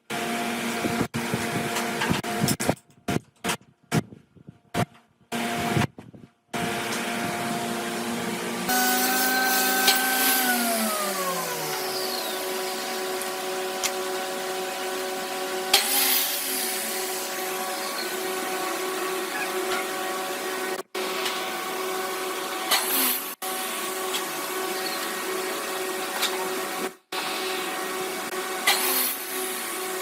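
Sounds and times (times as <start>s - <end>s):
motor slowing down: 6.6s - 20.8s
power tool motor whine: 6.6s - 30.0s.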